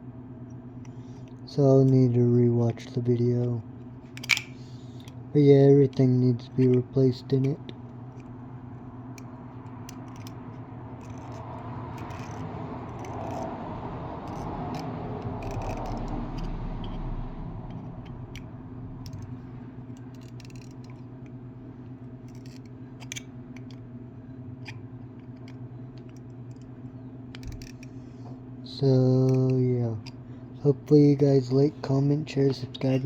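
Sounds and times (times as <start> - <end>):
steady low hum: 0.0 - 33.0
lighter parts clicking and rattling: 4.1 - 5.2, 5.9 - 8.4, 9.1 - 13.6, 14.2 - 21.4, 22.2 - 23.8, 24.6 - 28.0.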